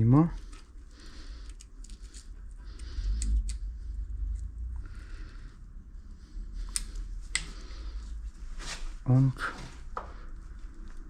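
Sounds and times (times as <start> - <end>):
low handling rumble: 2.3 - 11.0.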